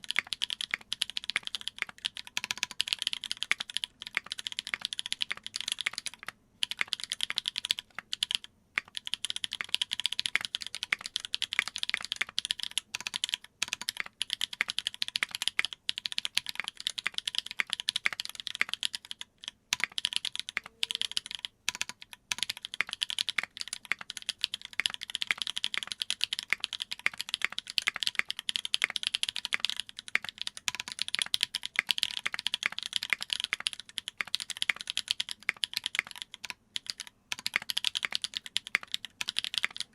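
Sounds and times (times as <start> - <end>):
fast typing on mechanical keyboard: 0.0 - 39.9.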